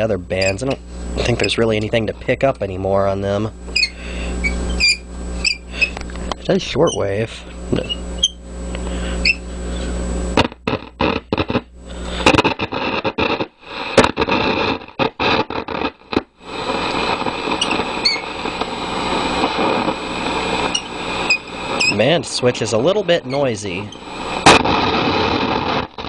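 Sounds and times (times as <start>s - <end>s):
radio crackling: 0.0s - 26.0s
radio hum and static: 0.0s - 26.0s
faint radio whistles: 3.7s - 6.0s, 9.2s - 9.4s, 16.9s - 22.2s.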